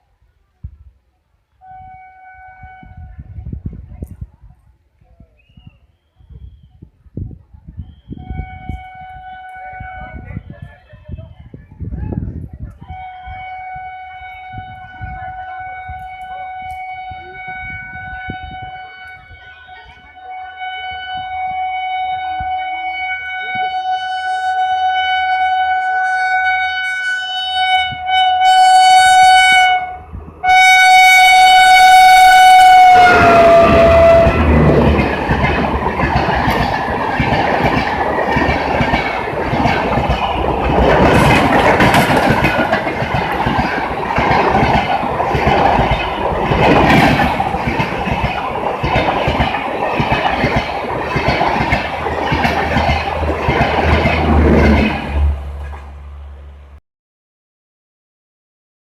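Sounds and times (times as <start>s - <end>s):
locomotive horn: 1.6s - 3.4s, 8.1s - 10.5s, 12.8s - 37.0s, 52.4s - 56.8s
train wheels clattering over rail joints: 33.3s - 55.9s.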